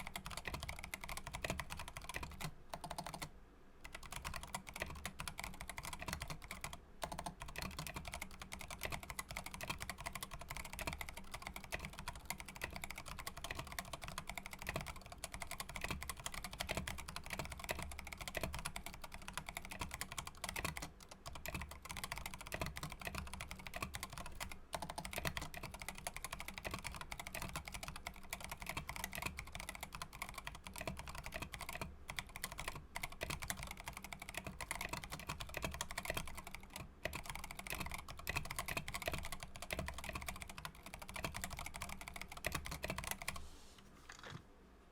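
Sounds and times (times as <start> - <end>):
fast typing on mechanical keyboard: 0.0 - 43.4.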